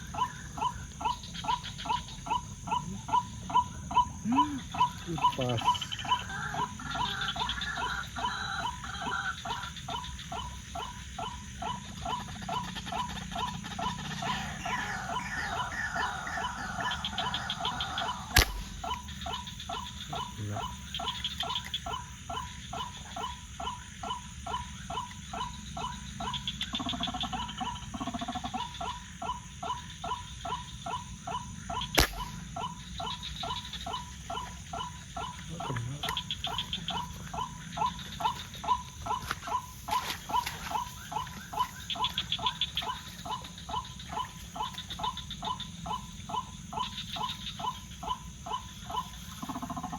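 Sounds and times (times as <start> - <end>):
high insect drone: 0.0 - 49.9
rhythmic frog or bird calls: 0.0 - 49.9
sharp clicks: 18.3 - 19.1, 32.0 - 32.5.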